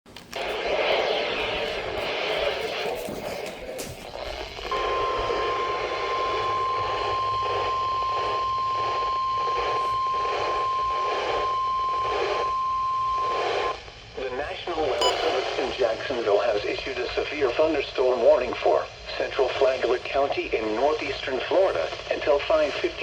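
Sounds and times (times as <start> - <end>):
pulsing radio static hiss: 0.4 - 23.0
steady alarm tone: 4.1 - 13.1, 15.0 - 16.2.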